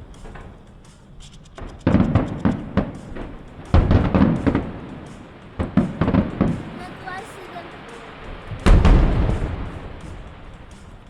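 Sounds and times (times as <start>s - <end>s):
fireworks booming: 0.0s - 11.0s
fireworks crackling: 0.0s - 11.0s.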